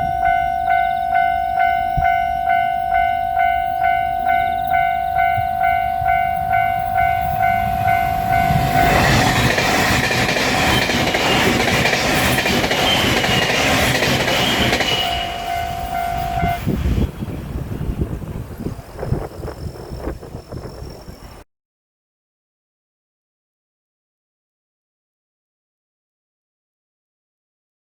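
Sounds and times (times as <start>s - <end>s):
level-crossing alarm ringing: 0.0s - 16.7s
passing train rushing: 0.0s - 21.4s.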